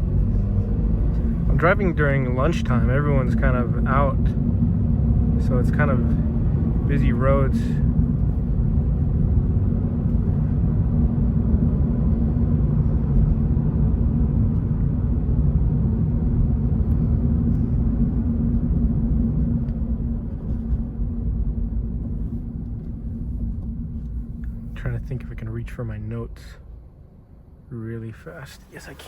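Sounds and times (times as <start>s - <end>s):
car engine drone in cabin: 0.0s - 29.0s.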